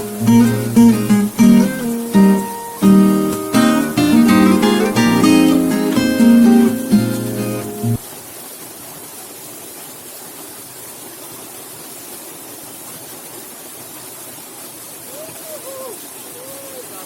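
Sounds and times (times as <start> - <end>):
flowing stream water: 0.0 - 17.0
faint voice: 15.1 - 17.0.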